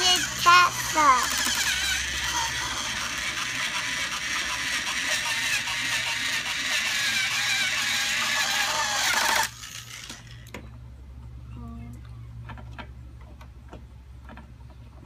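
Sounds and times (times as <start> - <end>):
toy screwdriver running: 0.0 - 10.5.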